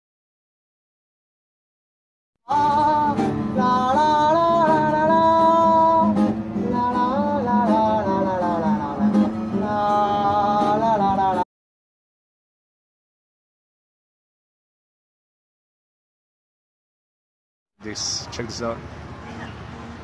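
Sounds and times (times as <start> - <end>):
person singing: 2.5 - 11.4
strummed acoustic guitar: 2.5 - 11.4.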